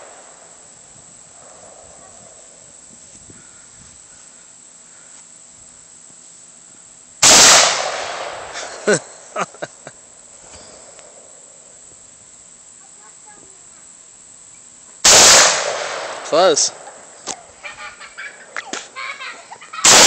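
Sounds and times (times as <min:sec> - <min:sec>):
rifle shot: 0:07.2 - 0:08.8, 0:15.0 - 0:16.9.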